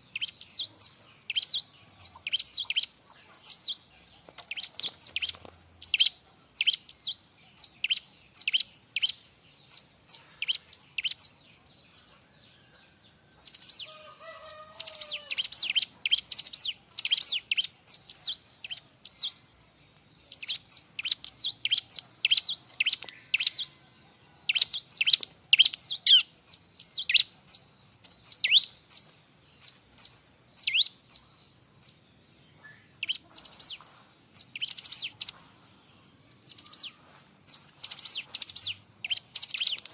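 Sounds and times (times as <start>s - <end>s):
bird chirping: 0.0s - 39.9s.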